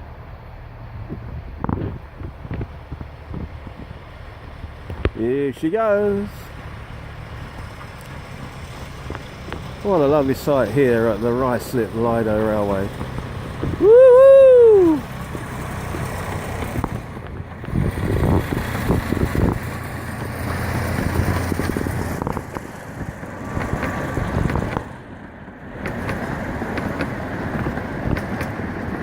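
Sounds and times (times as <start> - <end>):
miniature train rumbling past: 0.0 - 29.0
clicks and clatters from track: 6.4 - 13.6, 15.1 - 29.0
loud whoop: 13.7 - 15.1.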